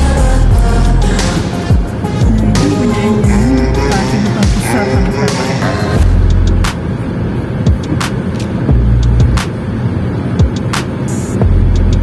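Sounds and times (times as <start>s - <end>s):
wavering melody: 0.0s - 6.6s
deep sliding bass notes: 0.0s - 7.0s, 7.7s - 9.4s, 11.4s - 12.0s.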